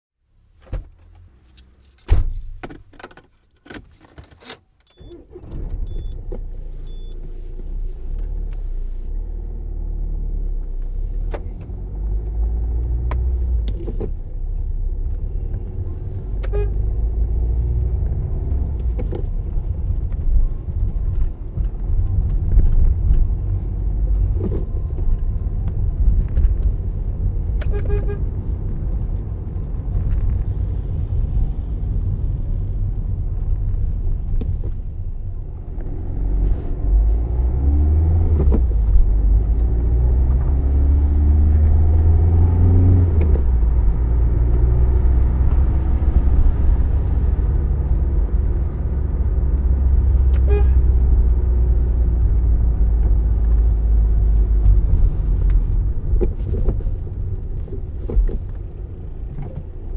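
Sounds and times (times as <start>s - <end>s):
road rumble: 0.2s - 59.9s
car engine accelerating: 5.0s - 27.0s, 35.4s - 59.9s.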